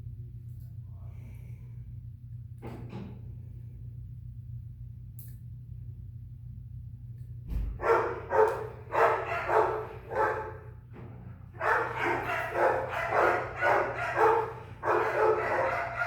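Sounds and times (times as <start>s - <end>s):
steady low hum: 0.0s - 16.0s
dog barking: 7.8s - 10.7s, 11.6s - 16.0s.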